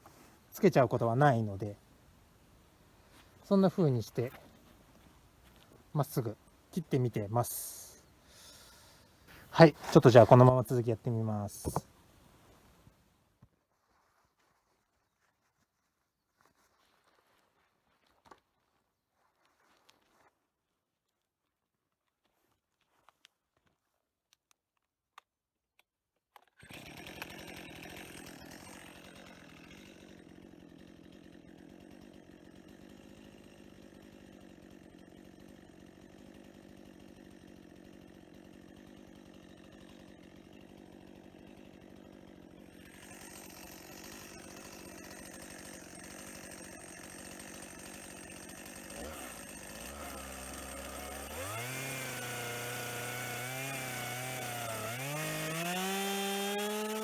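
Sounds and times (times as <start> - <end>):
chainsaw revving: 9.3 - 11.9, 26.6 - 57.0.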